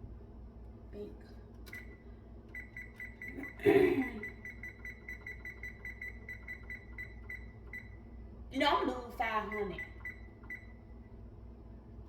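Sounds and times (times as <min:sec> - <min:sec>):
oven control panel beeping: 0:01.7 - 0:03.6, 0:04.2 - 0:08.0.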